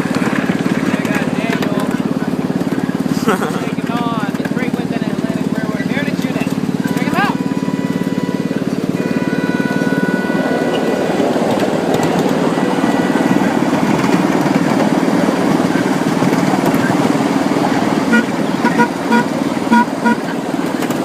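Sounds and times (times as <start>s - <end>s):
small locomotive engine running: 0.0s - 21.0s
horn toots: 6.7s - 14.6s, 18.0s - 20.4s.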